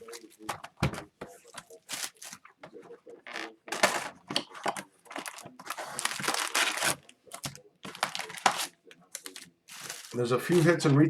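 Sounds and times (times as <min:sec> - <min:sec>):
packaging crinkling and tearing: 0:01.6 - 0:02.4, 0:03.3 - 0:11.0.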